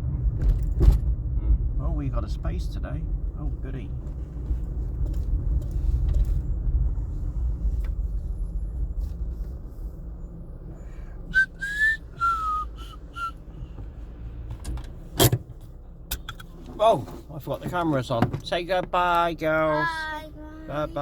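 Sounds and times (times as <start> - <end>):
car engine rumble: 0.0 - 21.0
person whistling: 11.3 - 13.4.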